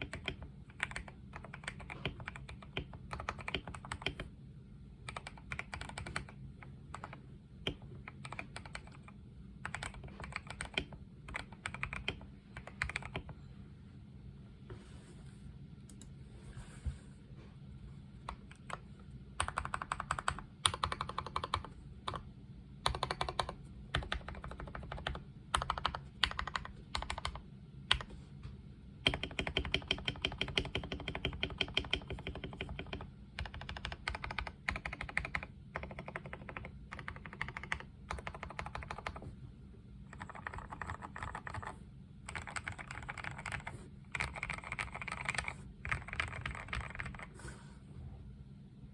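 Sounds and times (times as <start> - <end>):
mechanical keyboard typing: 0.0 - 4.3, 5.0 - 13.4, 18.3 - 18.8, 19.4 - 28.1, 29.0 - 39.3, 40.1 - 47.3.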